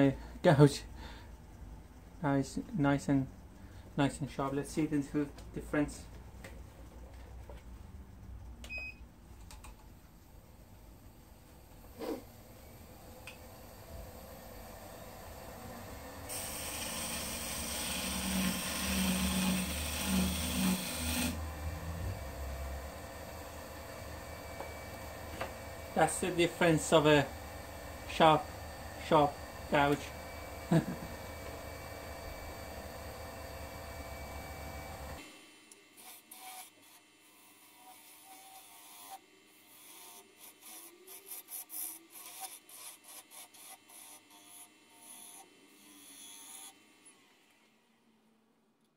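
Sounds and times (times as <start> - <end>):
lathe running hum: 11.0 - 47.5
gouge cutting spinning wood: 11.9 - 35.2, 35.9 - 46.8
tool rasping on wood: 15.9 - 22.0, 36.0 - 46.8.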